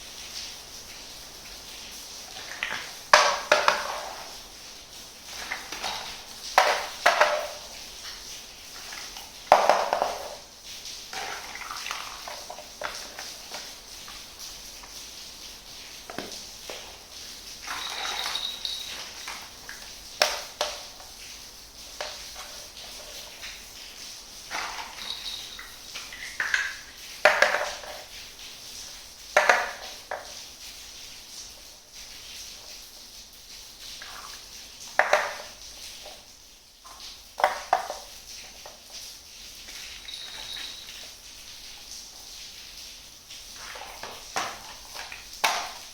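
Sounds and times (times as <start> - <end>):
toy kitchen pieces clacking: 2.3 - 4.3, 5.4 - 7.7, 9.5 - 10.4, 17.6 - 21.1, 24.5 - 28.1, 39.7 - 41.0.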